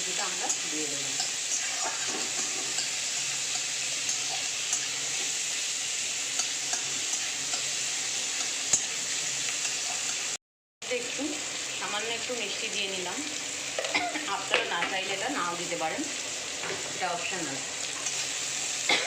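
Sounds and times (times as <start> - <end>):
onion sizzling in oil: 0.0 - 19.0.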